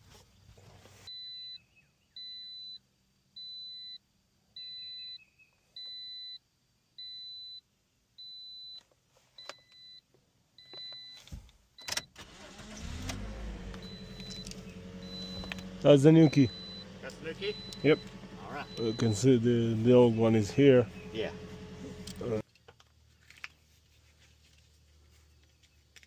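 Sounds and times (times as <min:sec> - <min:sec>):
electronic beeps: 0:01.1 - 0:02.8, 0:13.8 - 0:21.2
car engine cranking and starting: 0:11.8 - 0:22.4
car engine idling: 0:12.2 - 0:22.4.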